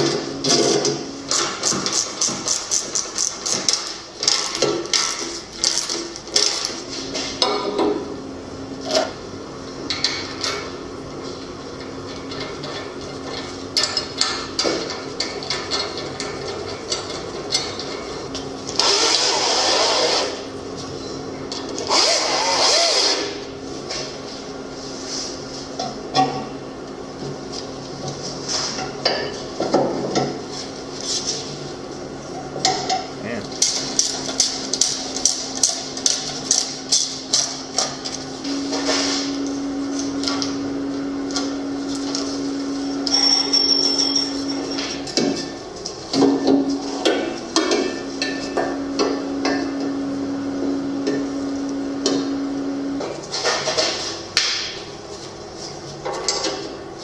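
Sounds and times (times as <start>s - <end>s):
metal tools clinking: 43.1s - 44.9s.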